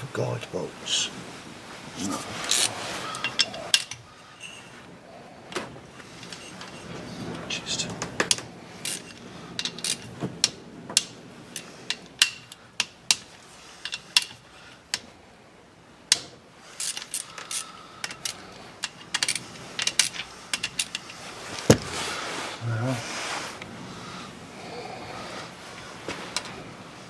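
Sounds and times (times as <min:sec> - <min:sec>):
metal tools clinking on engine parts: 0:02.0 - 0:04.9, 0:05.5 - 0:10.6, 0:11.5 - 0:15.0, 0:16.6 - 0:22.2.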